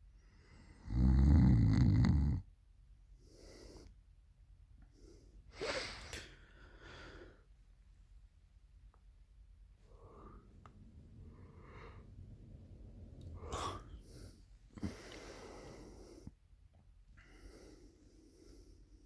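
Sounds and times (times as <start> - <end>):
woman snoring: 0.8 - 2.4
soft breaths: 3.2 - 4.0, 4.8 - 7.8, 9.6 - 19.0.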